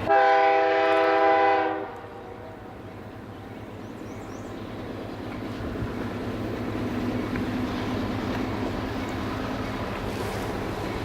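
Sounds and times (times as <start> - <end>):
locomotive air horn chord: 0.0 - 2.4
steady low rumble: 2.0 - 11.0.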